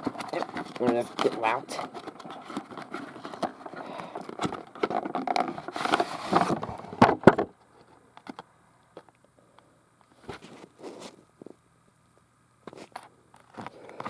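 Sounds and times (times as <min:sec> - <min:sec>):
packaging rustling: 0:00.0 - 0:07.1.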